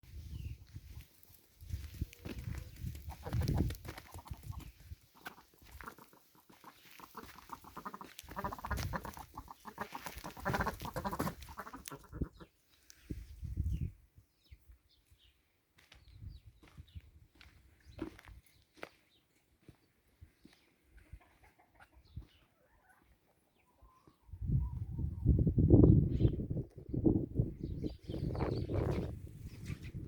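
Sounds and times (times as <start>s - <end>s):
poultry calling: 2.1s - 12.6s.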